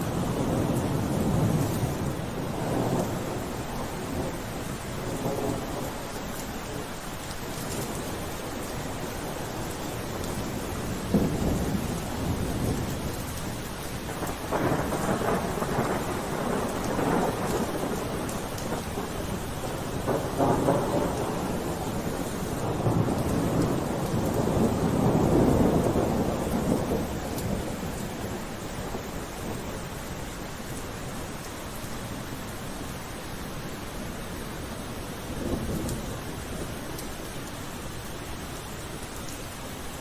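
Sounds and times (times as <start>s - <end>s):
rolling thunder: 0.0s - 6.0s, 10.4s - 29.6s, 35.3s - 36.8s
steady rainfall: 0.0s - 40.0s.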